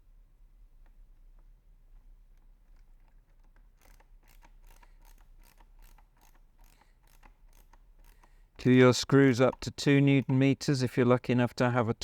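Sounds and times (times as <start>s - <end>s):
screwdriver clicking: 2.7s - 8.4s.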